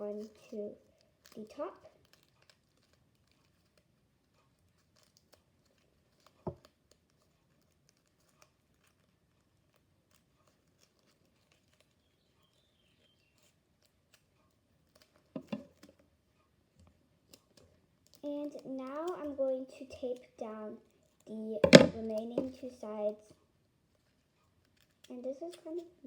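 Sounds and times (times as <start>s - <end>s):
tape and paper handling: 0.0s - 26.0s
knocks and rustles: 15.2s - 16.0s, 21.6s - 22.6s.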